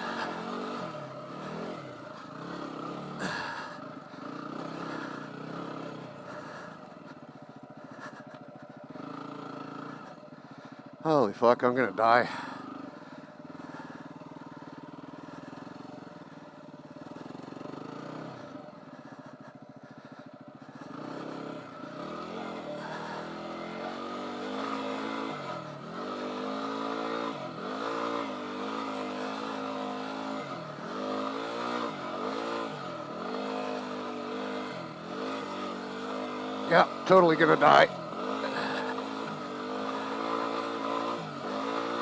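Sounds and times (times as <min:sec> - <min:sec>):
motorcycle engine revving: 0:00.0 - 0:42.0.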